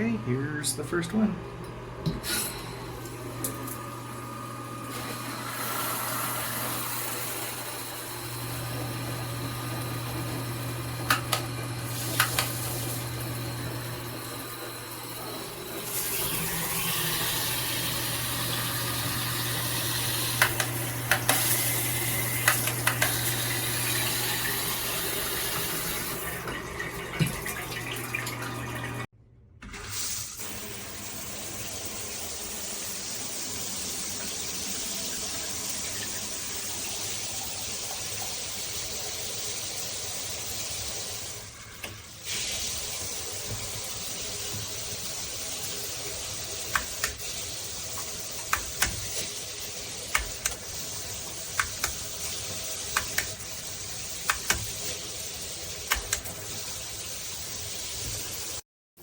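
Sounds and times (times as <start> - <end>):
shower head spraying water: 4.8 - 14.4, 15.1 - 26.6, 42.2 - 58.6
sharp clicks: 54.3 - 54.7.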